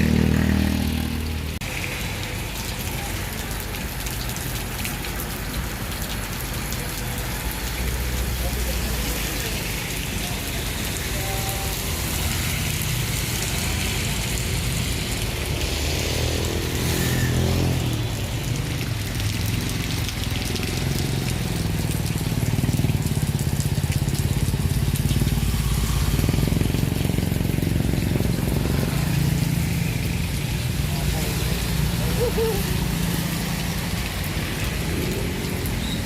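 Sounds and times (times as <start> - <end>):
vehicle passing by: 0.0 - 1.6, 11.9 - 36.0
heavy rain hissing: 0.0 - 36.0
vehicle engines running: 0.0 - 36.0.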